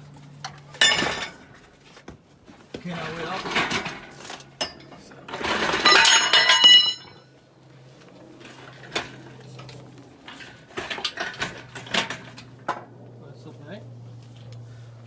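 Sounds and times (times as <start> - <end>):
metal objects clattering: 0.4 - 1.8, 2.9 - 7.3, 8.4 - 12.8.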